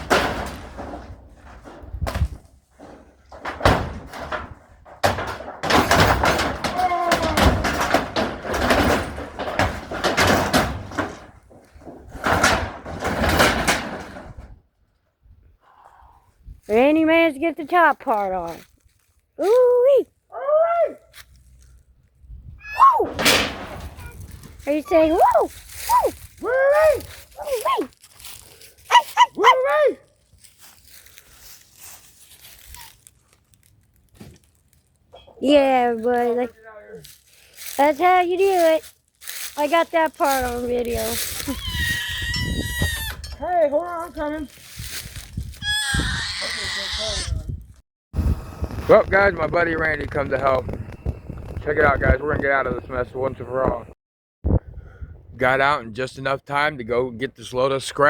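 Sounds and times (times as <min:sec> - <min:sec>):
boards and sheet metal torn apart: 0:00.0 - 0:14.5, 0:23.0 - 0:24.7
faint crackling and rustling: 0:23.4 - 0:29.3, 0:30.1 - 0:45.6, 0:48.6 - 0:54.0.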